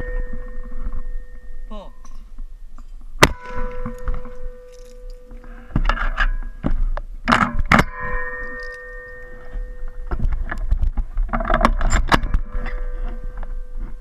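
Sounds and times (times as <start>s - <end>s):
shotgun firing with ringing: 3.2s - 4.3s
clattering: 7.3s - 13.2s.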